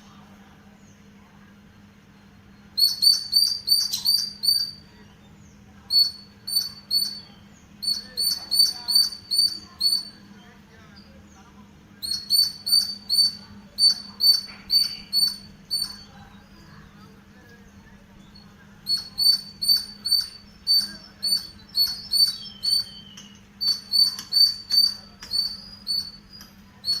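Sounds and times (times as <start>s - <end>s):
squirrel chirping: 2.6s - 5.0s, 5.9s - 11.1s, 12.0s - 17.2s, 17.8s - 27.0s.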